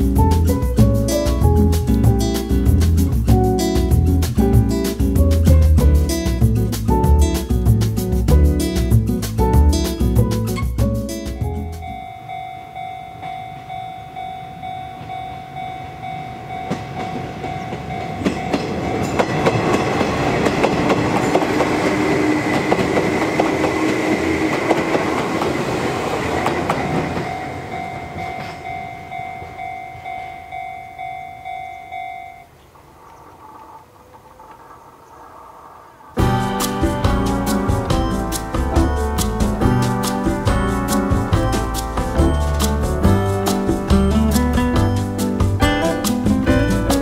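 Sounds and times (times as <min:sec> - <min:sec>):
train wheels clattering: 0:00.0 - 0:30.6
steady ringing tones: 0:11.0 - 0:20.3, 0:25.9 - 0:45.3.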